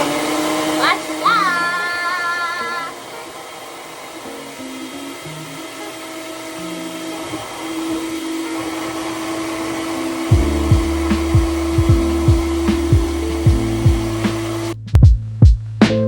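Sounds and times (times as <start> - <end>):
blender motor running: 0.0 - 14.8
sharp knocks in blender: 10.3 - 15.2.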